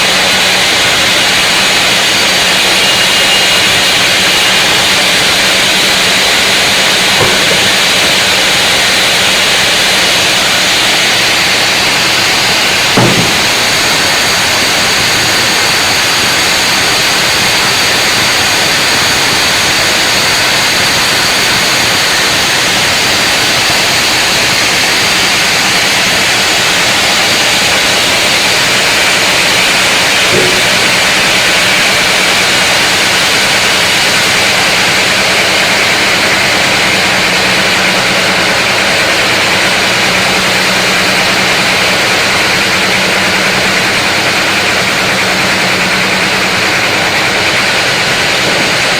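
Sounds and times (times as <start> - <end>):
sawmill saw cutting log: 0.0 - 48.9
small knock: 7.2 - 7.9, 13.0 - 13.8, 30.3 - 30.9.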